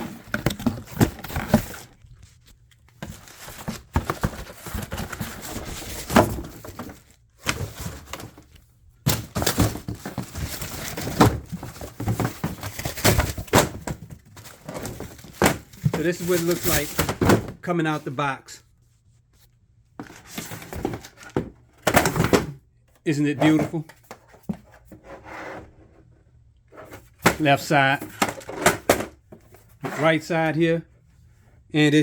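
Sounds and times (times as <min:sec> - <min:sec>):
packaging rustling: 0:00.0 - 0:17.2.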